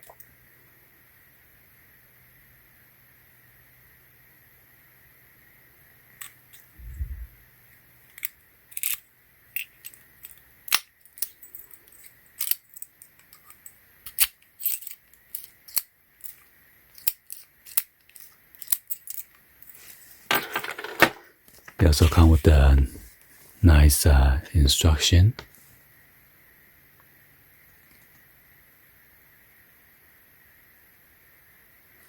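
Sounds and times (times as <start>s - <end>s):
metal and plastic parts clicking: 8.1s - 9.0s, 9.6s - 19.4s.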